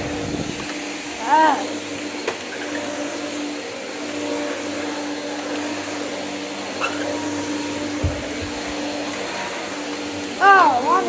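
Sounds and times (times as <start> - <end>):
vacuum cleaner running: 0.0 - 11.0
thump: 8.0 - 8.6.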